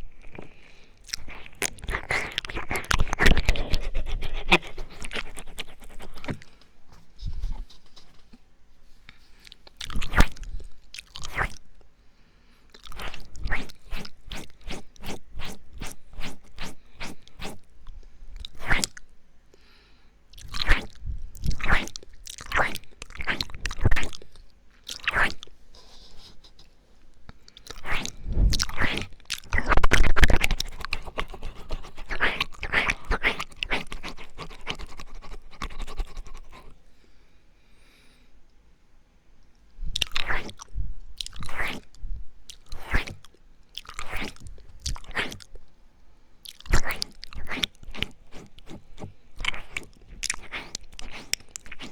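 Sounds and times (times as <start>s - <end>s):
wet mouth clicks and smacks: 0.0s - 6.6s, 9.4s - 11.6s, 12.7s - 19.1s, 20.3s - 25.5s, 27.3s - 36.7s, 39.9s - 45.6s, 46.4s - 51.9s.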